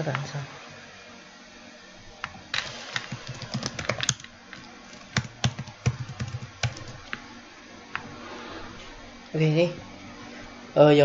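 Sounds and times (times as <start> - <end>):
computer keyboard typing: 2.2 - 7.2.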